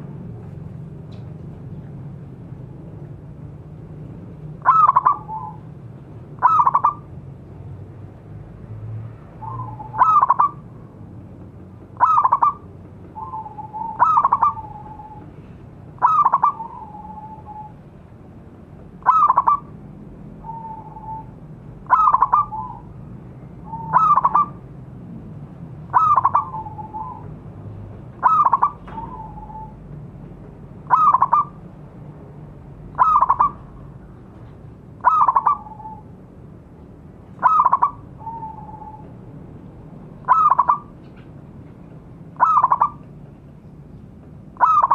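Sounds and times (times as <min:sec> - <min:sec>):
dove cooing: 0:04.6 - 0:05.6, 0:06.4 - 0:07.0, 0:09.4 - 0:10.6, 0:12.0 - 0:15.4, 0:16.0 - 0:17.8, 0:19.0 - 0:19.7, 0:21.9 - 0:22.9, 0:23.6 - 0:24.6, 0:25.9 - 0:27.3, 0:28.2 - 0:29.8, 0:30.9 - 0:31.6, 0:33.0 - 0:33.6, 0:35.0 - 0:36.0, 0:37.4 - 0:39.1, 0:40.2 - 0:41.0, 0:42.4 - 0:43.0, 0:44.6 - 0:44.9.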